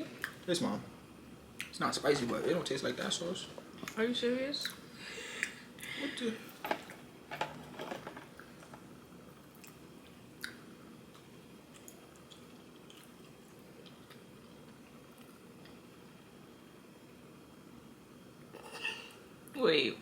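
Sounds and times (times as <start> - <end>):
person chewing food: 10.4 - 15.8.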